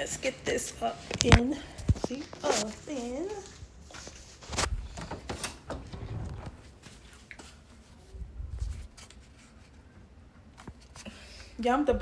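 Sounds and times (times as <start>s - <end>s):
oven door and rack clicks and scrapes: 4.4s - 6.8s
low bumps: 4.6s - 6.8s.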